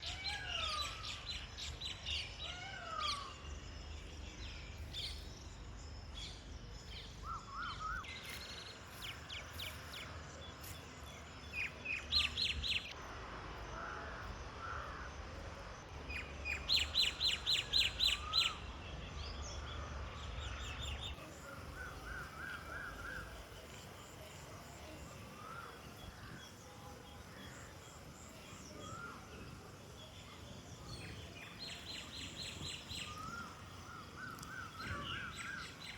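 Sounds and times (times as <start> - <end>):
wild birds calling and singing: 0.0 - 13.0, 16.0 - 35.9.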